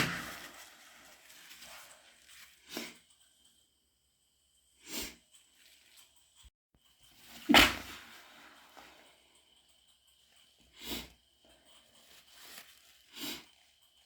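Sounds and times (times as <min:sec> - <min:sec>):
wet sneeze: 0:07.4 - 0:08.2
sharp nose sniffs: 0:13.1 - 0:13.5.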